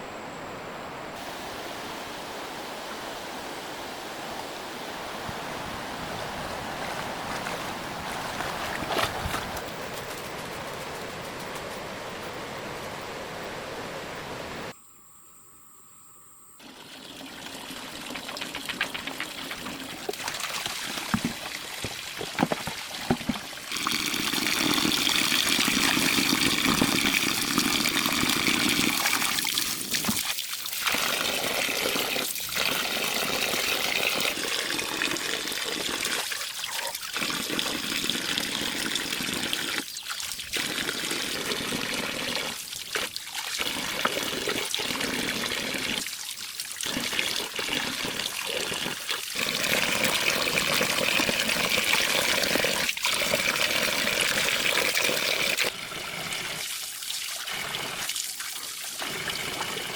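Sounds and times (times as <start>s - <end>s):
water running and pouring: 16.6s - 59.9s.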